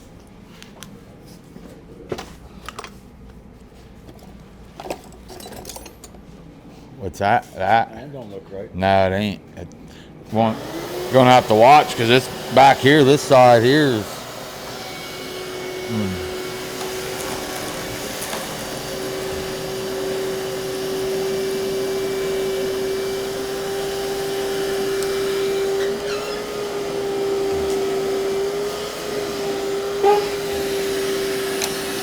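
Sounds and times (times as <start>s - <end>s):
even whine: 10.4s - 32.0s.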